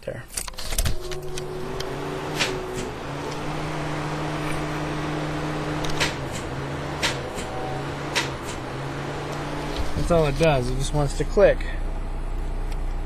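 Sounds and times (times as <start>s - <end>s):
car starter clicking: 0.5s - 3.8s, 4.6s - 11.2s.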